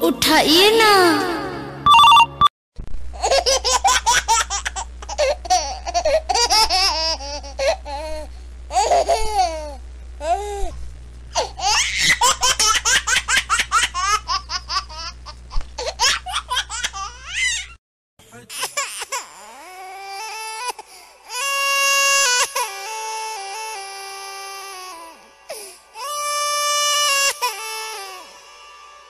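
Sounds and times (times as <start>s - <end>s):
low steady hum: 2.8s - 17.8s.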